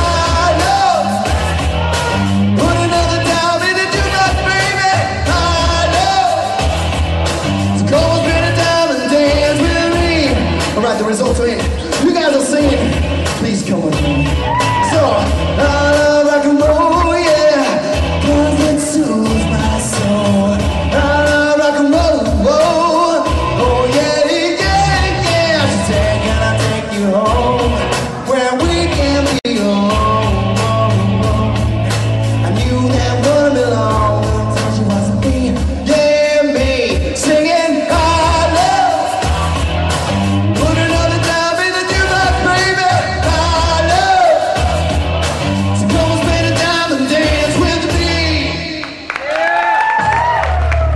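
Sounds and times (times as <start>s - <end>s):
person singing: 0.0s - 50.9s
rock and roll song: 0.0s - 50.9s.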